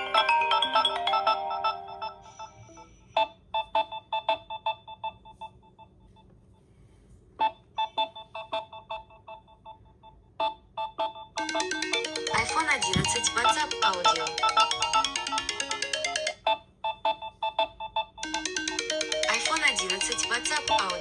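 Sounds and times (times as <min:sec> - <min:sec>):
smartphone ringtone melody: 0:00.0 - 0:05.8, 0:10.4 - 0:21.0.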